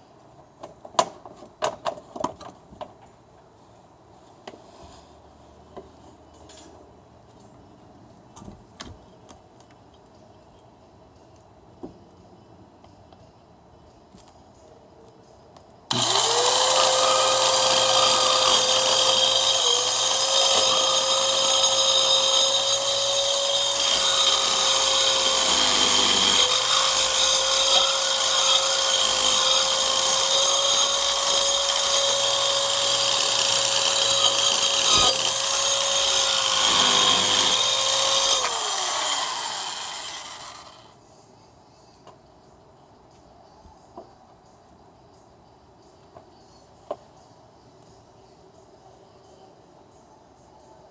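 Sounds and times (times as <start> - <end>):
circular saw motor whine: 15.9 - 40.9.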